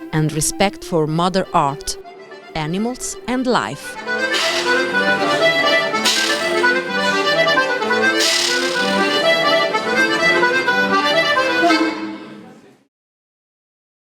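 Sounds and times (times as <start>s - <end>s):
instrumental music: 0.0s - 12.5s.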